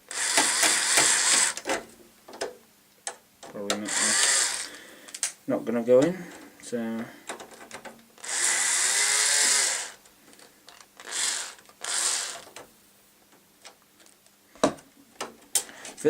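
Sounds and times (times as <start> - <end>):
electric screwdriver running: 0.1 - 1.6, 3.9 - 4.8, 8.2 - 10.0, 11.0 - 12.5.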